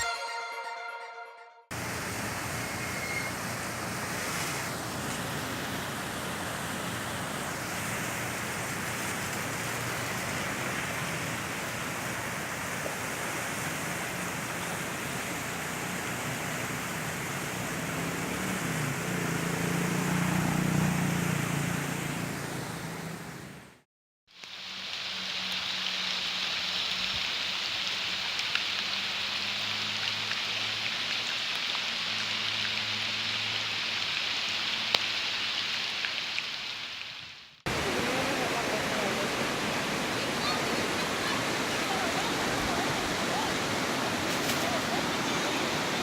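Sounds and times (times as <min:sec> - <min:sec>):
running water: 0:01.7 - 0:23.2, 0:24.3 - 0:46.0
heavy rain: 0:01.7 - 0:23.6, 0:24.3 - 0:46.0.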